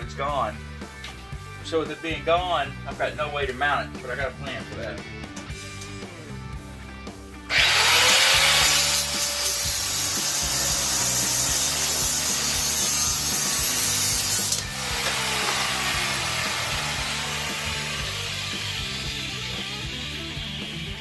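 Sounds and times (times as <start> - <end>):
power cutting tool whining: 7.5 - 21.0
guitar music: 12.3 - 21.0.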